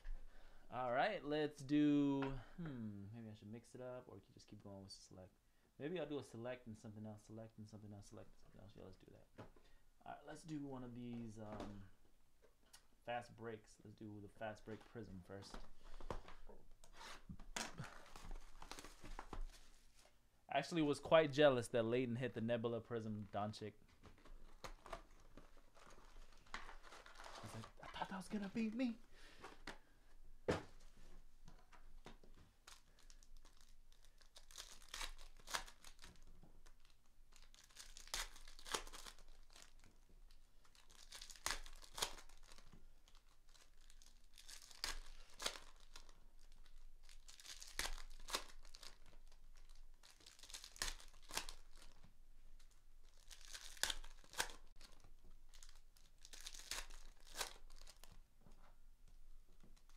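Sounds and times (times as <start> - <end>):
card pack wrappers tearing: 16.9 - 19.6, 24.2 - 29.0, 32.6 - 52.0, 52.6 - 58.2.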